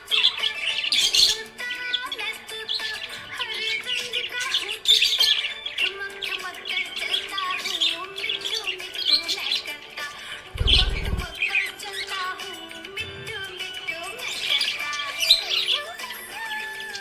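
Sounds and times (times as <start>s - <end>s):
budgerigar chirping and warbling: 0.0s - 9.9s, 10.6s - 12.0s, 14.1s - 17.0s.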